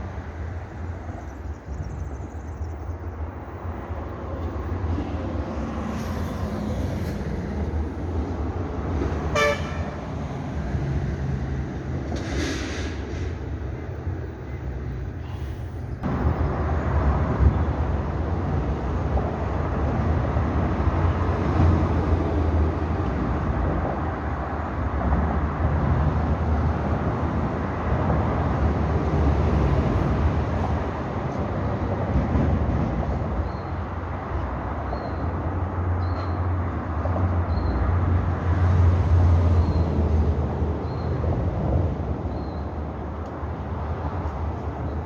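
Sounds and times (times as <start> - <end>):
vehicle rumble: 4.5 - 45.0.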